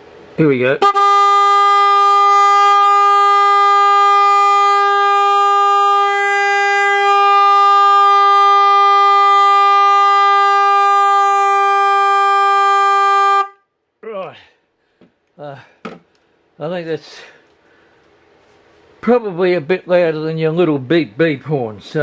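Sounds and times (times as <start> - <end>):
car horn blast: 0.8 - 13.6.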